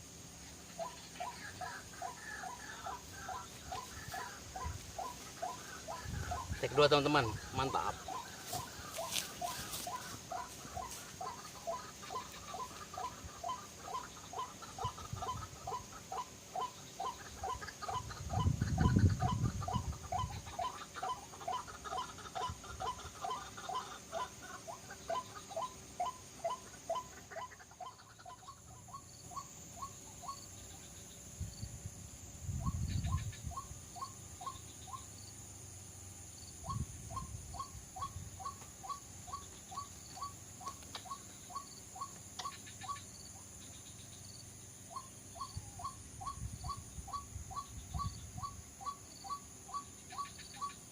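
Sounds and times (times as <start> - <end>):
high insect-like hiss: 0.0 - 50.9
waterhen calls: 0.4 - 30.7.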